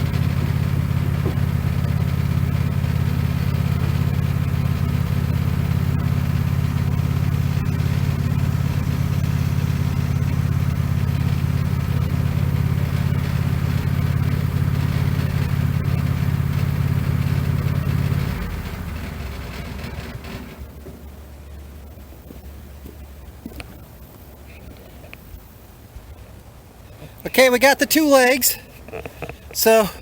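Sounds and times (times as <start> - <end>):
sawmill engine running: 0.0 - 22.5.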